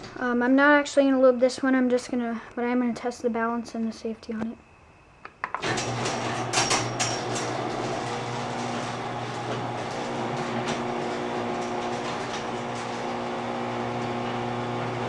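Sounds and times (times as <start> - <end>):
garage door opener motor humming: 5.6 - 15.0.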